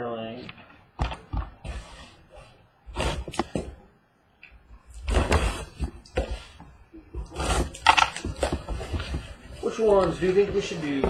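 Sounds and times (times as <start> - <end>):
cardboard boxes scraping and knocking: 1.5 - 3.8, 5.0 - 11.0.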